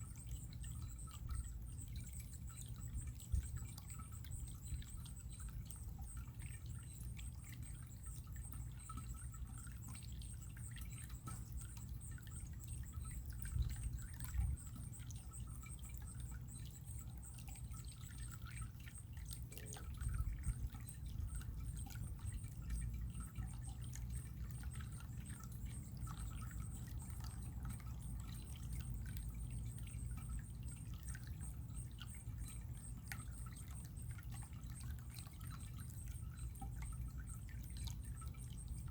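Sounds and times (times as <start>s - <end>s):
water drips and splashes: 0.0s - 38.9s
water trickling: 0.0s - 38.9s.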